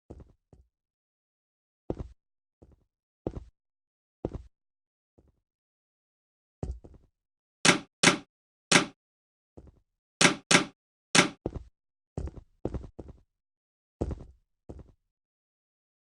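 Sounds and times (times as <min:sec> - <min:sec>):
sharp knocks: 0:07.7 - 0:09.0, 0:10.2 - 0:11.4.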